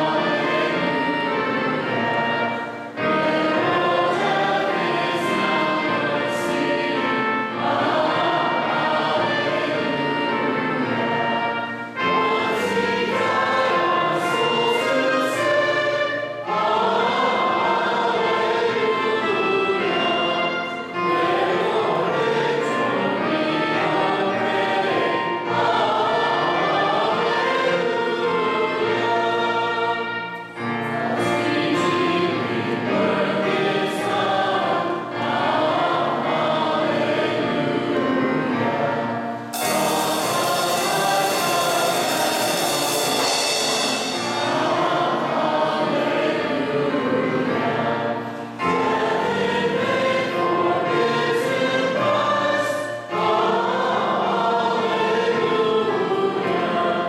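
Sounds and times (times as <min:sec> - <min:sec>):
choir and congregation singing hymn: 0:00.0 - 0:57.0
sudden hiss: 0:39.4 - 0:45.3.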